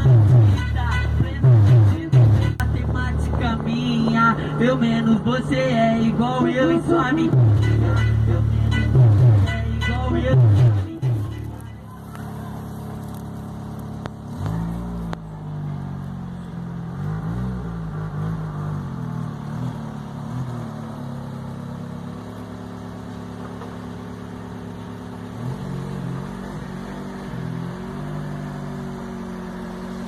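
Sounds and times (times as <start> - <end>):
car engine revving: 0.0 - 30.0.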